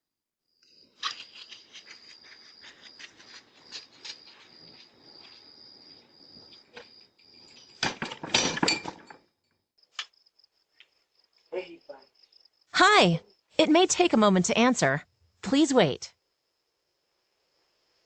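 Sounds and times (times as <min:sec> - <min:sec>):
crickets trilling: 0:00.4 - 0:18.0
clattering: 0:07.8 - 0:09.3.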